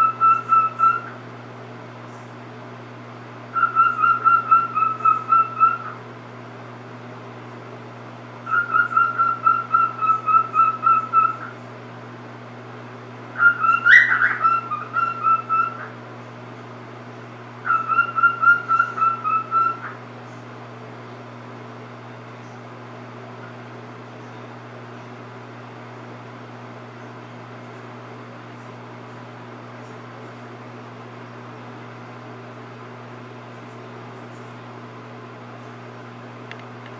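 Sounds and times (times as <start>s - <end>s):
cockatiel whistling: 0.0s - 1.1s, 3.6s - 6.0s, 8.5s - 11.5s, 13.4s - 15.9s, 17.7s - 19.9s.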